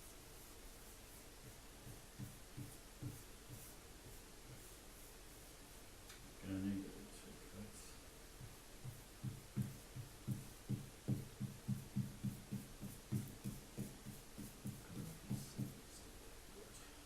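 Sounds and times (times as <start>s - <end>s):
paint strokes thumping on wall: 0.0s - 5.9s, 8.3s - 16.0s.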